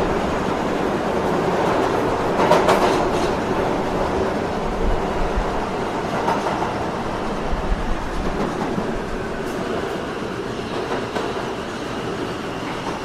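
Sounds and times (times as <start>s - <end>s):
faint rail clacks: 0.0s - 13.0s
subway train wheels rumbling: 0.0s - 13.0s.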